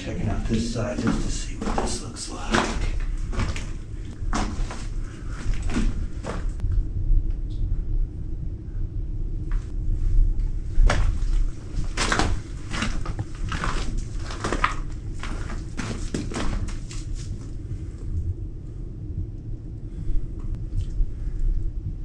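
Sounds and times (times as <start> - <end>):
footsteps crunching on rubble: 0.0 - 6.6, 10.8 - 17.5
steady low rumble: 0.0 - 22.0.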